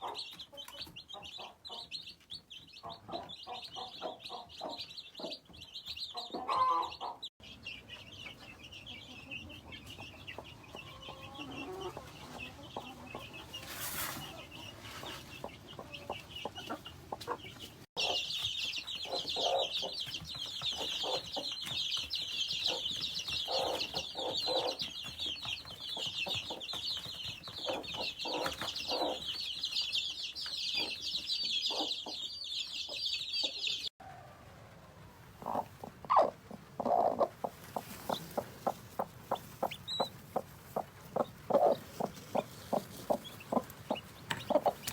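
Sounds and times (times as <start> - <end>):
chicks peeping: 0.0 - 33.9, 34.9 - 44.9
hen clucking: 2.7 - 7.3, 7.9 - 21.8, 22.6 - 26.8, 35.3 - 44.9.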